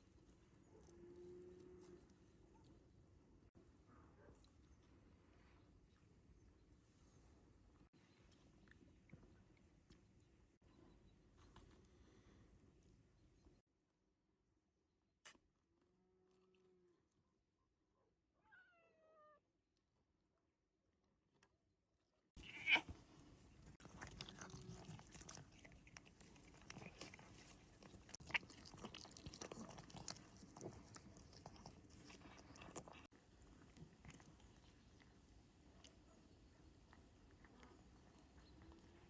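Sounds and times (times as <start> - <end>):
wet chewing and crunching: 23.6 - 36.0.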